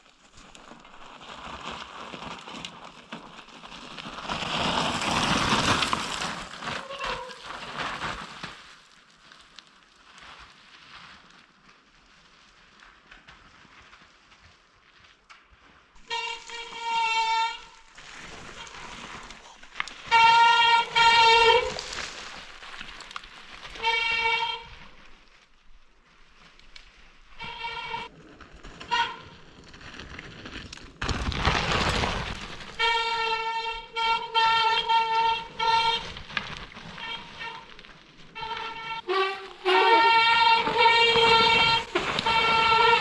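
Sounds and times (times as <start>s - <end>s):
bike rolling noise: 0.0s - 43.0s
bike brakes squealing: 16.0s - 19.0s, 20.0s - 22.2s, 38.4s - 43.0s.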